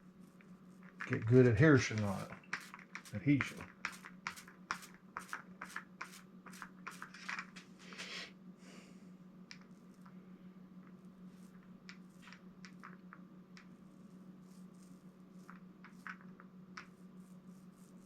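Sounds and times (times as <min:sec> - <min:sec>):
faint steady hum: 0:00.0 - 0:18.0
paint roller clicking and crackling: 0:00.3 - 0:07.6, 0:11.4 - 0:18.0.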